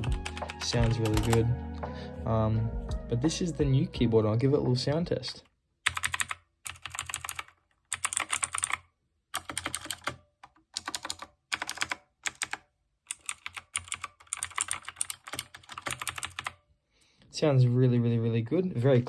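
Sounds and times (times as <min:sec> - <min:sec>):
clicky mechanical keyboard typing: 0:00.0 - 0:01.5, 0:05.9 - 0:08.8, 0:09.4 - 0:16.6.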